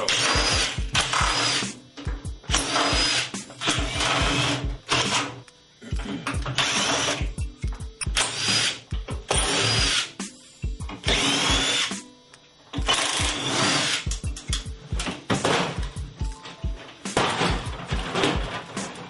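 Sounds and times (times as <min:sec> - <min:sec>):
power drill motor whine: 0:00.0 - 0:01.8, 0:02.4 - 0:05.5, 0:06.4 - 0:07.3, 0:08.1 - 0:10.2, 0:11.0 - 0:12.1, 0:12.7 - 0:15.2
background music with beat: 0:00.0 - 0:19.0.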